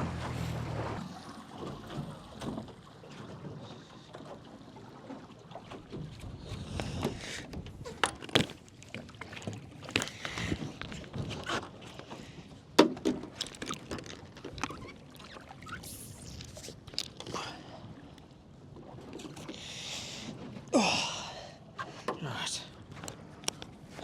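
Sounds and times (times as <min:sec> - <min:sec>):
knocks and clatter on boat: 0:00.0 - 0:15.5, 0:21.8 - 0:24.0
water noise: 0:00.0 - 0:22.0.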